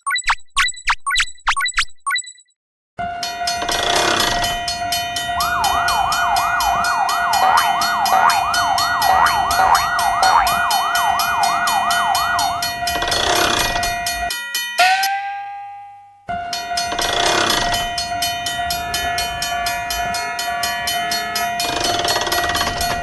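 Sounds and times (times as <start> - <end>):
siren-like sweep: 3.0 - 15.4
level-crossing warning bell ringing: 3.0 - 23.0.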